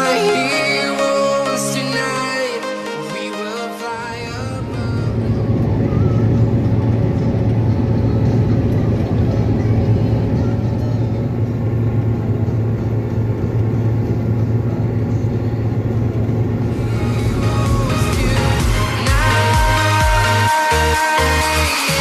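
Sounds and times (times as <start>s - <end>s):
diesel harvest machinery running: 0.0s - 22.0s.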